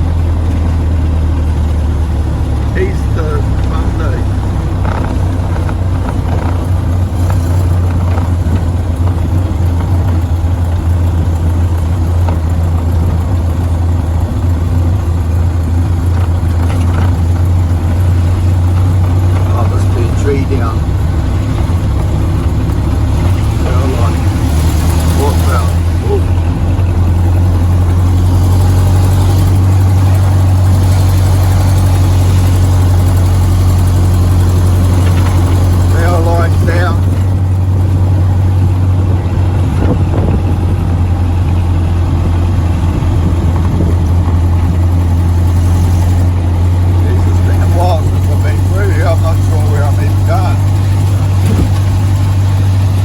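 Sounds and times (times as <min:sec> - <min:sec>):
old car engine droning: 0:00.0 - 0:53.0
rain and tyre noise: 0:00.0 - 0:53.0.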